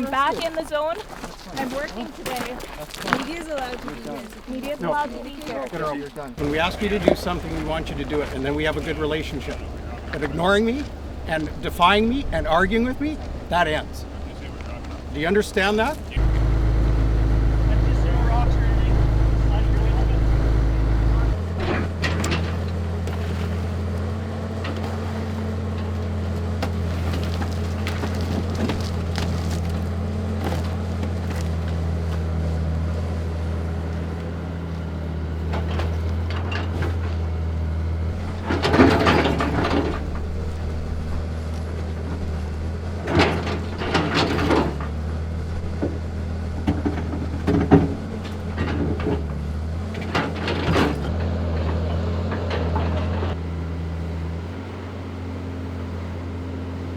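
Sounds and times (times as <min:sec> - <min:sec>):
engine droning: 0:00.0 - 0:56.9
clattering knocks: 0:06.4 - 0:32.3, 0:35.3 - 0:53.4.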